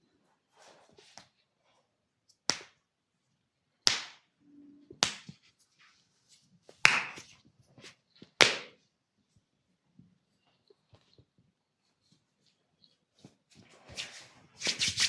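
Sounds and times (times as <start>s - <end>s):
hand slapping body: 2.5s - 2.8s, 3.8s - 4.3s, 5.0s - 5.4s, 6.8s - 7.4s, 8.4s - 8.8s.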